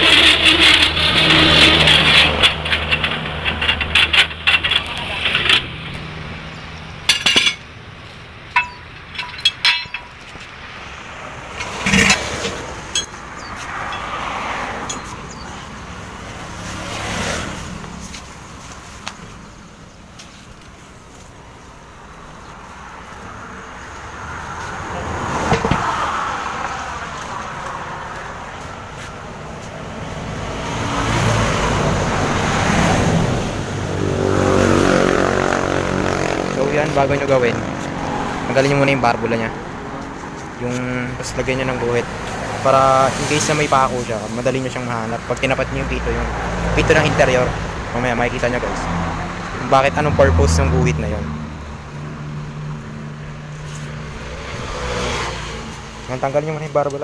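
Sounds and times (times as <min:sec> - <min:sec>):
metal clinking and clanking: 0:00.0 - 0:06.1, 0:07.0 - 0:07.7, 0:08.5 - 0:10.6, 0:11.5 - 0:14.2
traffic passing: 0:00.0 - 0:57.0.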